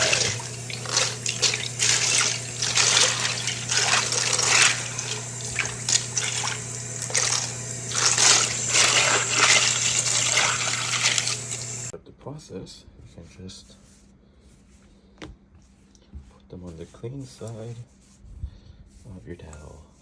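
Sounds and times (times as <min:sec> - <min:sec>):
steady low hum: 0:00.0 - 0:11.9
tap water splashing into sink: 0:00.0 - 0:11.9.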